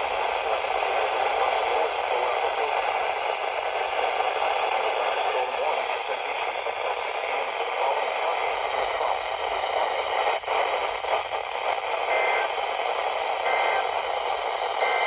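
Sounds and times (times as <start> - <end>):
radio static hiss: 0.0 - 15.0
two-tone data bursts: 12.0 - 12.6, 13.3 - 14.0, 14.6 - 15.0.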